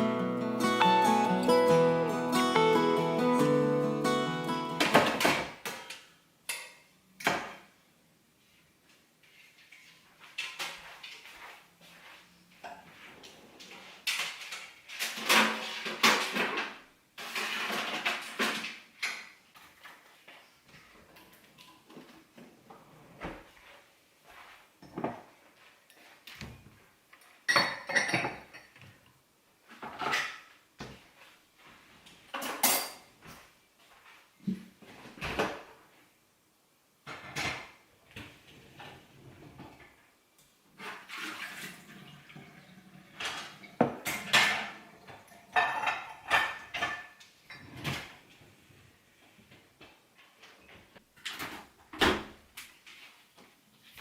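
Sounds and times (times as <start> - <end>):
clinking dishes and cutlery: 27.4 - 28.8, 32.3 - 33.1, 43.2 - 48.1.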